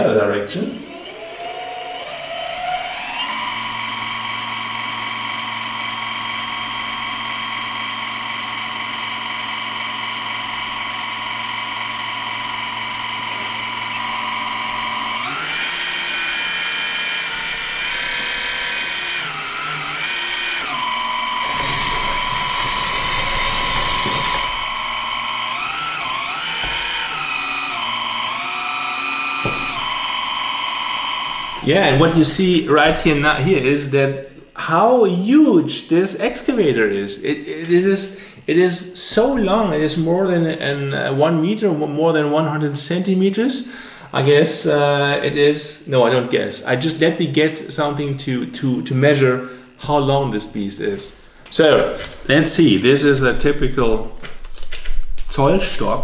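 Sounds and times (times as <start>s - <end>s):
hydraulic pump whining: 0.3s - 34.6s, 36.2s - 41.2s.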